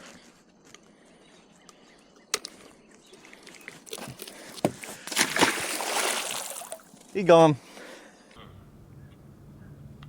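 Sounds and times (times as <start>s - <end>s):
water splashing: 3.2s - 7.1s.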